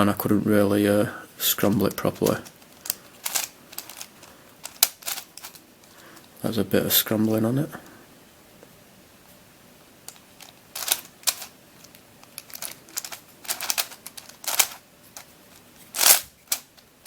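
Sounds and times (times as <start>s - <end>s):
plastic twisty puzzle clicking: 2.2s - 5.6s, 10.1s - 15.3s.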